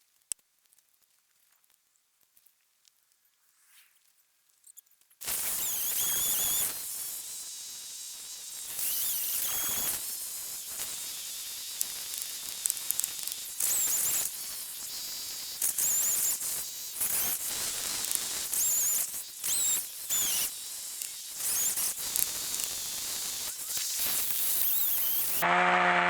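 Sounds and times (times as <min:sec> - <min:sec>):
chainsaw revving: 0:25.0 - 0:26.0.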